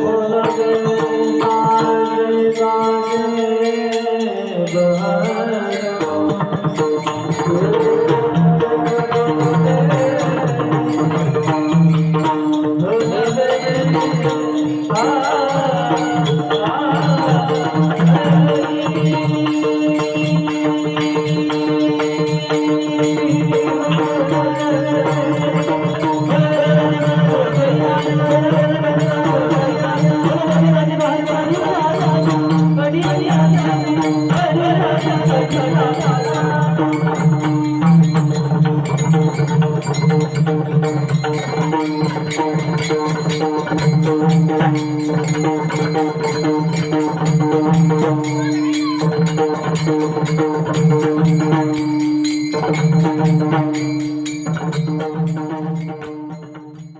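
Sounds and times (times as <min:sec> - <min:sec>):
light rhythmic percussion: 0:00.0 - 0:56.9
man singing devotional song: 0:00.0 - 0:56.9.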